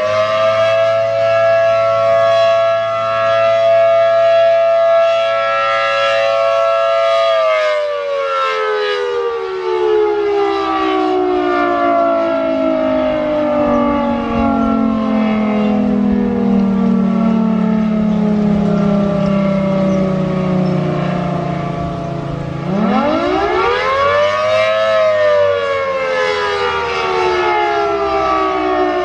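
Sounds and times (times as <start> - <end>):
rotating siren two-note chord: 8.6 - 29.0
wind buffeting microphone: 13.0 - 23.8.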